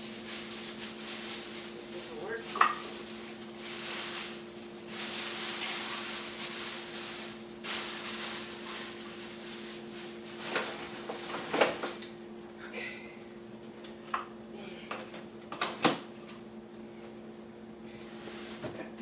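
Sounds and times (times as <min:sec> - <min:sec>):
plastic bag rustling: 0:00.0 - 0:12.0
low appliance hum: 0:00.0 - 0:19.0.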